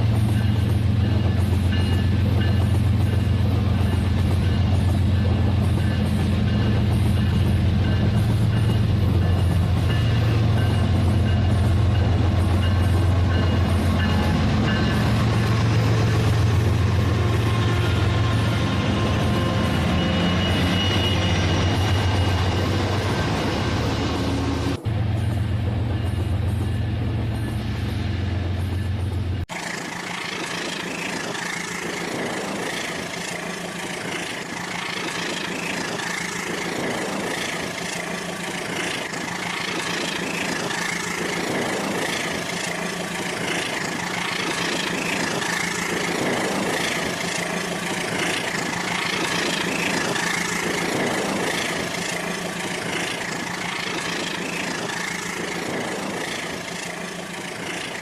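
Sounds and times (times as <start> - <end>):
toy train rattling on track: 29.5 - 58.0.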